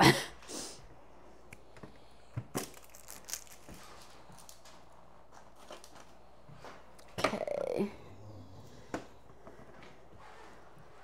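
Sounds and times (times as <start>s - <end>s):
packaging crinkling: 2.5s - 6.1s.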